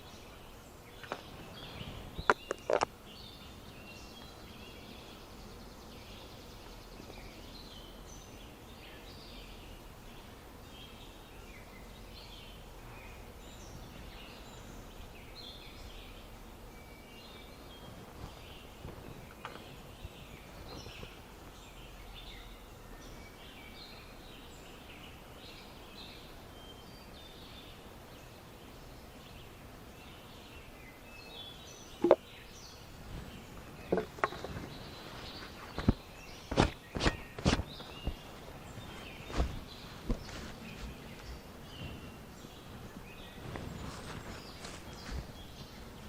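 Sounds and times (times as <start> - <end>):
birds chirping: 0.0 - 46.0
outdoor background noise: 0.0 - 46.0
sharp knocks and clicks: 33.9 - 34.5.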